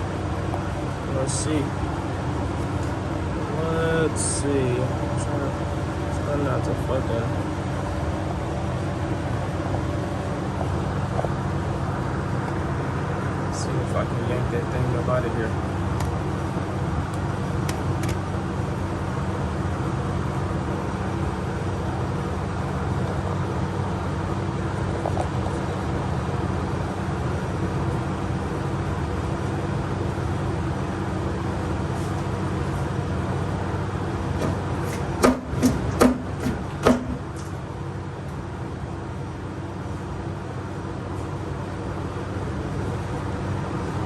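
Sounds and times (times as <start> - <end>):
low mechanical hum: 0.0 - 44.0
sharp metal knocks: 34.4 - 37.6.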